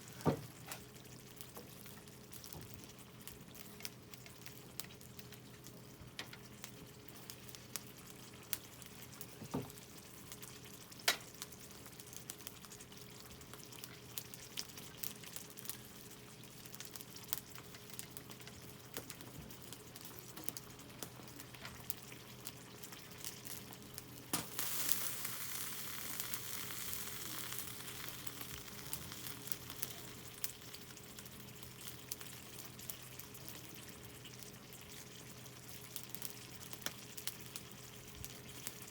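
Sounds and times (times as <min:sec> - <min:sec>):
food sizzling in a can: 0:06.4 - 0:38.9
campfire crackles and pops: 0:16.7 - 0:34.6, 0:35.5 - 0:38.9.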